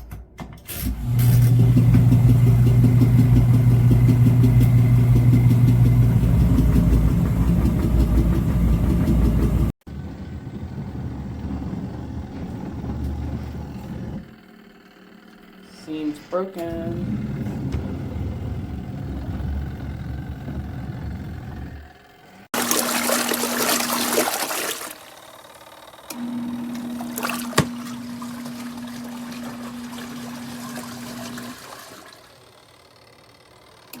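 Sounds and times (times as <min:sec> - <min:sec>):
washer motor hum: 0:00.7 - 0:34.0
water running and trickling: 0:22.6 - 0:25.2, 0:26.6 - 0:32.3.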